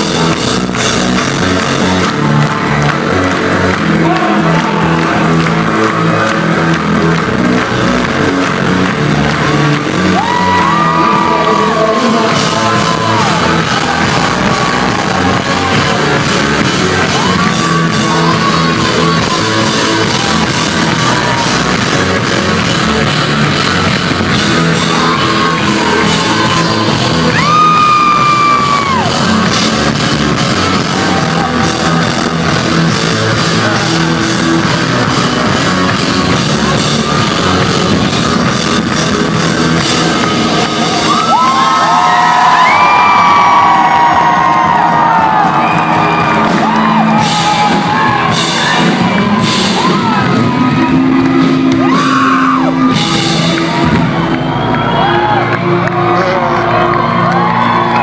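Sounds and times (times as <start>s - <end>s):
person singing: 10.2s - 14.9s
live rock band playing: 45.4s - 54.8s.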